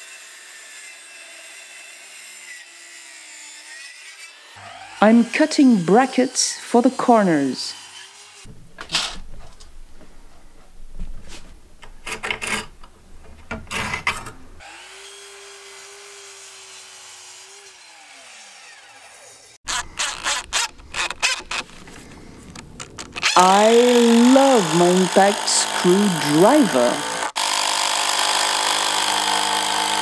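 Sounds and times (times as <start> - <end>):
power tool motor running: 4.5 - 6.4, 14.6 - 21.7, 23.1 - 30.0
woodworking knocks and clicks: 11.8 - 14.4.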